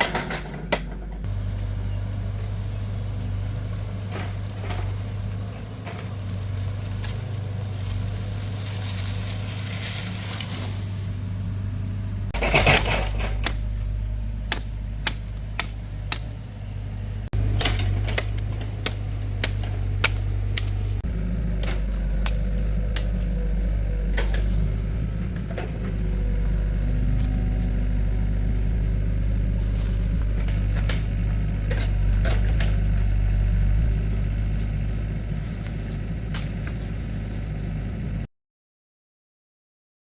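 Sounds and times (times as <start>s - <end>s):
engine humming: 0.0s - 38.3s
sharp clicks and knocks: 12.4s - 13.7s, 17.4s - 20.8s.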